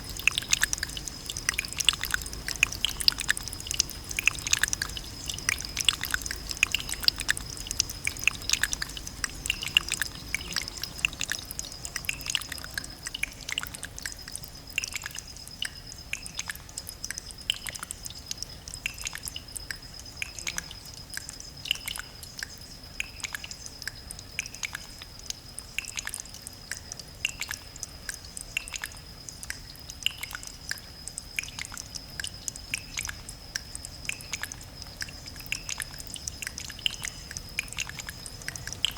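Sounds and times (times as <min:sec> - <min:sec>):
thin steady high tone: 0:00.0 - 0:16.8
water dripping: 0:00.0 - 0:38.9.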